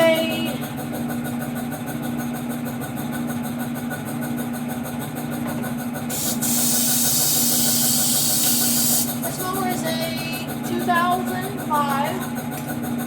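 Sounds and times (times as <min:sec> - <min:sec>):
motor humming: 0:00.0 - 0:01.0, 0:05.4 - 0:13.0
loud steady hiss: 0:06.1 - 0:09.3.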